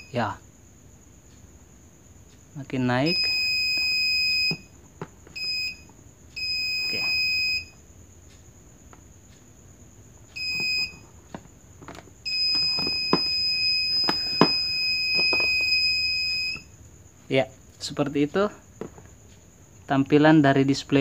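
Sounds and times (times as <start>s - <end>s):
high-pitched warning beep: 3.0s - 4.7s, 5.4s - 5.8s, 6.4s - 7.8s, 10.4s - 11.0s, 12.3s - 16.7s.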